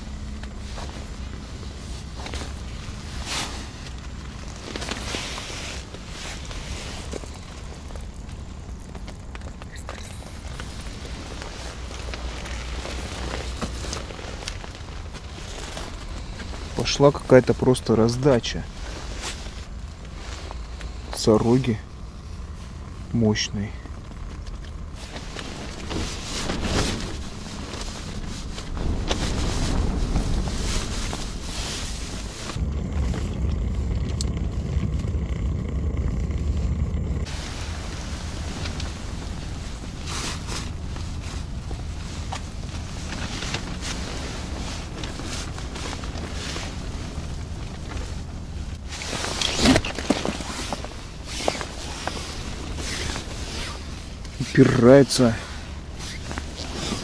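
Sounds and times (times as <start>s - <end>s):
clothing rustling: 0.0s - 32.6s, 37.2s - 57.0s
wind buffeting microphone: 25.8s - 48.9s.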